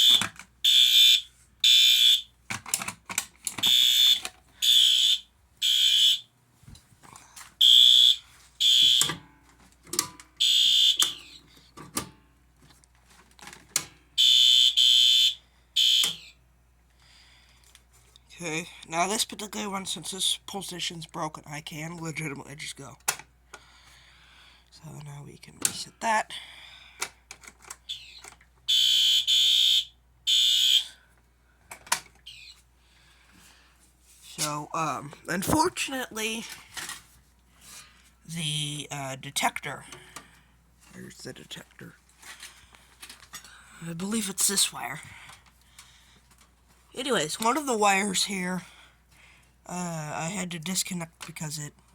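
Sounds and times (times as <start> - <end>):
fire alarm horn blasts: 0.0 - 2.3, 3.6 - 6.3, 7.6 - 9.2, 10.4 - 11.3, 14.2 - 16.4, 28.7 - 31.0.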